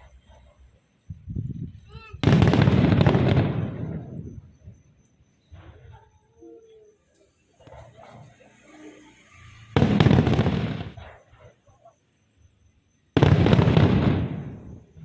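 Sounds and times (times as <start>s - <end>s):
fireworks bangs with rumble: 2.2s - 4.6s, 9.7s - 11.5s, 13.2s - 15.0s.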